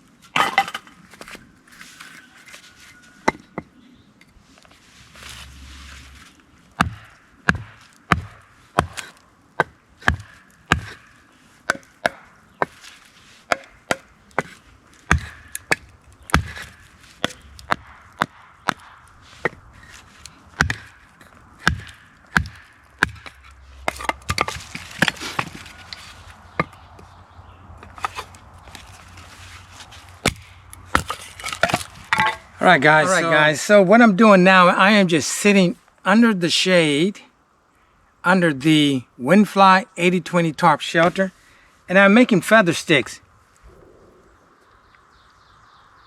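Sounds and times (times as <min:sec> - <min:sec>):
wood cracking: 0:05.3 - 0:26.9.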